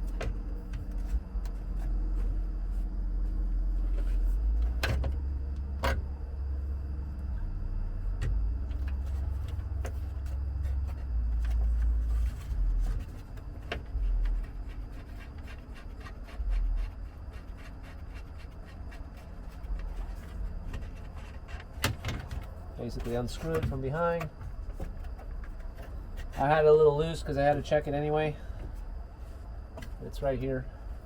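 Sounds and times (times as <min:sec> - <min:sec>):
low rumble of handling noise: 0:00.0 - 0:31.0.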